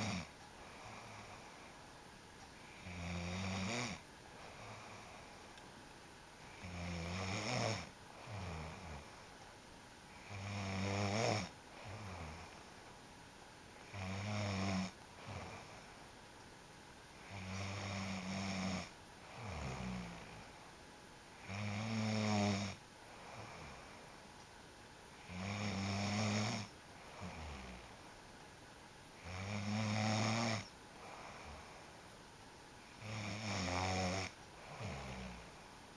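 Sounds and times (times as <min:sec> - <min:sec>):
person snoring: 0:00.0 - 0:01.5, 0:02.7 - 0:05.3, 0:06.5 - 0:09.2, 0:10.1 - 0:12.6, 0:13.9 - 0:15.8, 0:17.2 - 0:20.5, 0:21.4 - 0:23.9, 0:25.2 - 0:27.9, 0:29.2 - 0:31.8, 0:33.0 - 0:35.5
soft breath out: 0:31.0 - 0:32.1.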